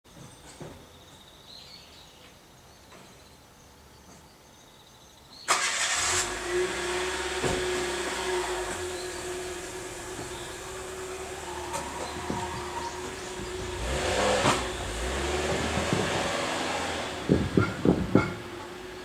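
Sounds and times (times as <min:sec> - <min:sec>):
vehicle passing close: 0:05.5 - 0:19.0.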